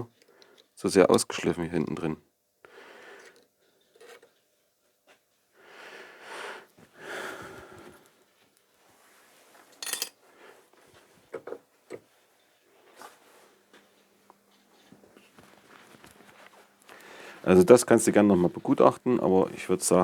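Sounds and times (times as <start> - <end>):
metal parts clinking: 9.8 - 10.2.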